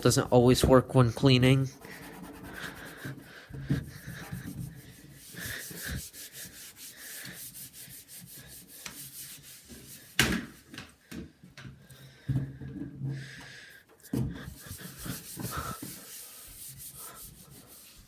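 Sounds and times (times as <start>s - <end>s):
hand scrubbing computer case: 0.0s - 10.2s, 14.4s - 18.0s.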